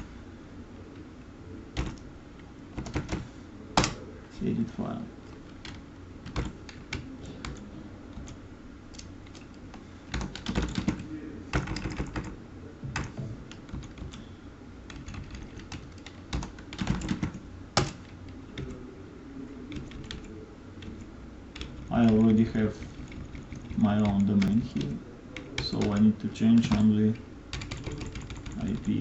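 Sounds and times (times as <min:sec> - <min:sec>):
typing on a computer keyboard: 0:01.8 - 0:02.0, 0:02.8 - 0:04.0, 0:05.3 - 0:12.3, 0:13.0 - 0:14.2, 0:14.9 - 0:18.8, 0:19.7 - 0:21.0, 0:21.6 - 0:26.9, 0:27.5 - 0:29.0.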